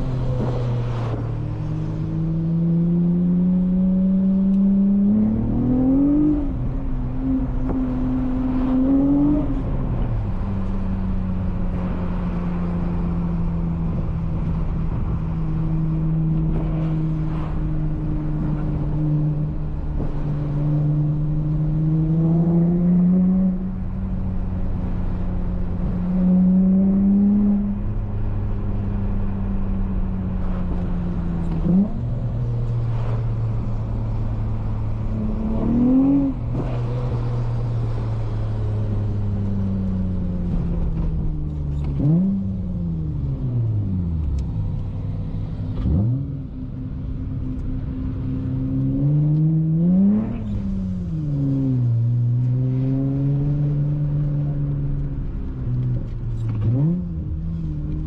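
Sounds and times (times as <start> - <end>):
car engine revving through exhaust: 0.0 - 58.0.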